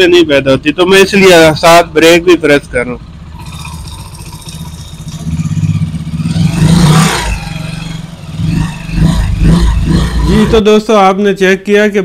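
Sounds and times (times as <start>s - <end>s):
motorcycle engine running: 1.4s - 10.8s.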